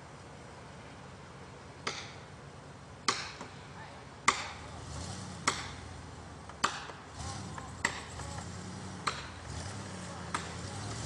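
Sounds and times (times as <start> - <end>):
axe chopping wood: 1.8 - 2.2, 3.1 - 3.6, 4.2 - 4.6, 5.4 - 5.8, 6.4 - 8.1, 9.0 - 9.4, 10.3 - 10.6.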